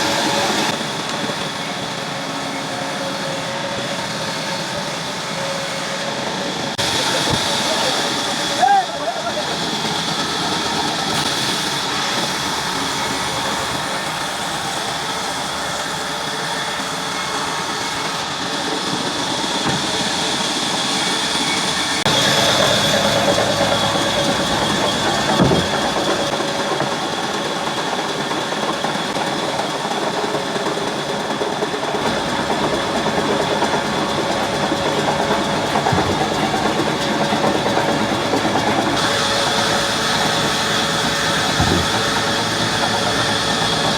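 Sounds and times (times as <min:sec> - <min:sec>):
sawmill saw whining: 0:00.0 - 0:43.9
single knock: 0:25.4 - 0:25.8, 0:41.6 - 0:42.1.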